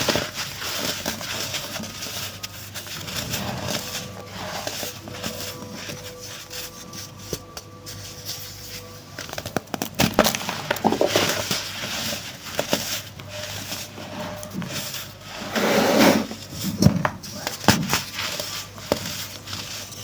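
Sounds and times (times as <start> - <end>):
baking soda crunching: 0.0 - 15.4.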